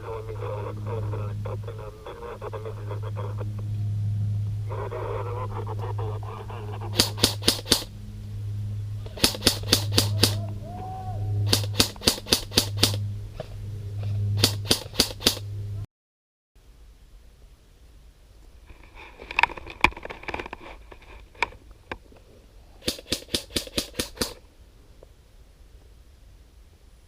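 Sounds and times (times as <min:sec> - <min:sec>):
steady low hum: 0:00.0 - 0:15.9, 0:16.6 - 0:27.0
airsoft gun firing bursts: 0:06.9 - 0:07.9, 0:09.1 - 0:10.4, 0:11.5 - 0:13.0, 0:14.4 - 0:15.4, 0:22.8 - 0:24.4.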